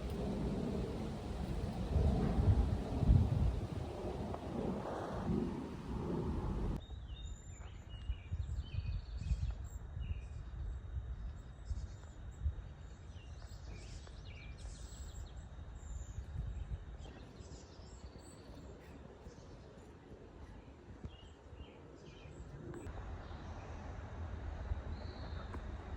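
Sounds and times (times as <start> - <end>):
low constant rumble: 0.0 - 6.8.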